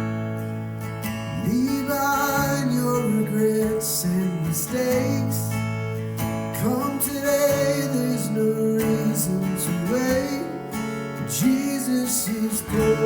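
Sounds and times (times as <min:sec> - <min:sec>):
strummed acoustic guitar: 0:00.0 - 0:13.0
person singing: 0:06.6 - 0:10.7, 0:11.3 - 0:13.0.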